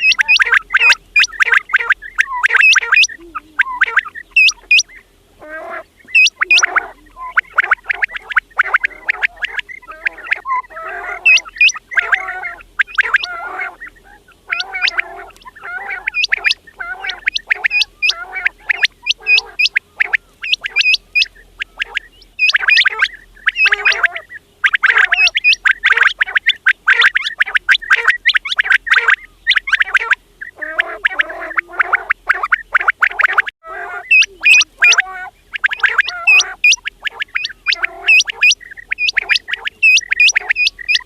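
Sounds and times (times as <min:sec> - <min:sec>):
low throaty chattering: 0:00.0 - 0:21.8
quails whistling: 0:00.0 - 0:41.0.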